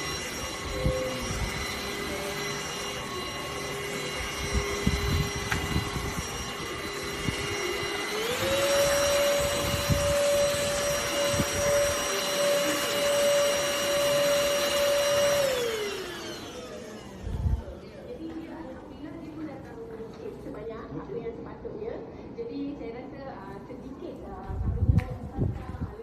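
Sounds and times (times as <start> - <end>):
handheld vacuum motor whine: 0.0 - 18.0.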